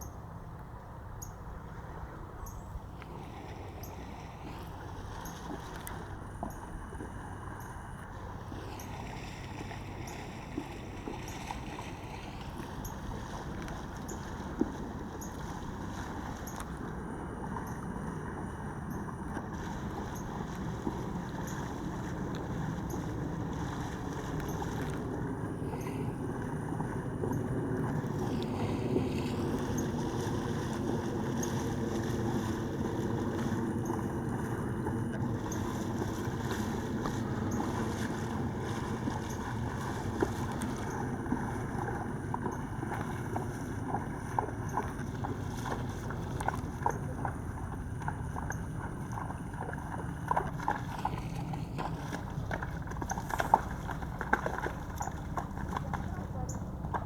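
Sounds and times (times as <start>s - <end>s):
flowing river water: 0.0s - 57.0s
wind on microphone: 17.4s - 46.8s.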